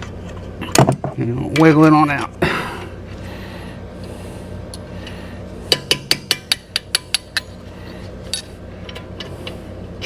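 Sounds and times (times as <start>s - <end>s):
metal parts and tools clinking: 8.2s - 9.6s.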